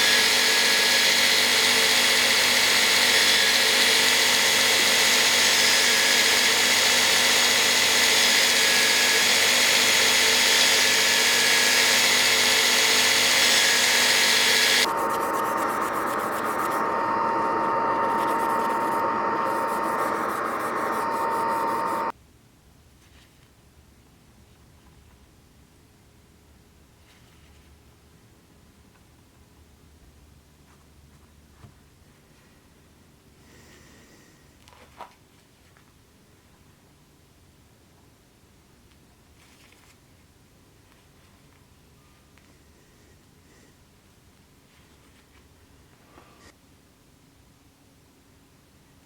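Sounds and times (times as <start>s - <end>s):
electric power tool running: 0.0s - 22.1s.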